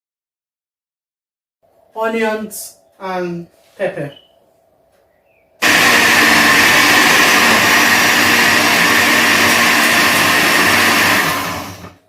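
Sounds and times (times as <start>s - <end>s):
blender running: 5.6s - 12.0s.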